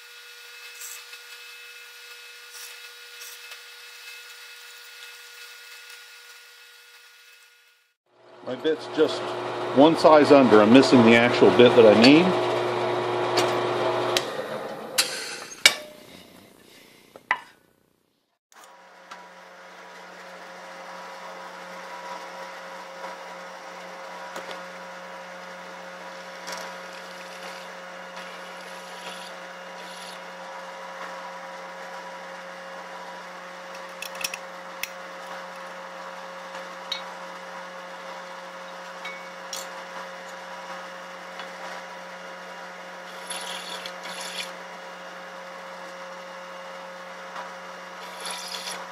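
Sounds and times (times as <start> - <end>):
drill press motor hum: 0.0 - 15.4, 18.6 - 48.9
drill bit rasping into metal: 26.1 - 30.3, 43.0 - 44.6, 48.0 - 48.9.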